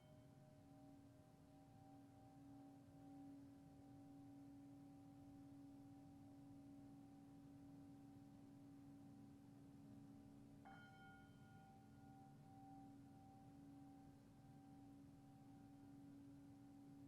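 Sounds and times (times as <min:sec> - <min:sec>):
singing bowl ringing: 0:10.6 - 0:16.4.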